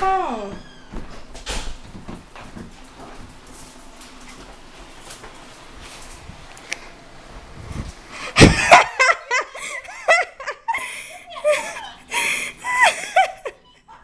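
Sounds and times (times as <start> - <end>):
people laughing hard: 8.4 - 13.6.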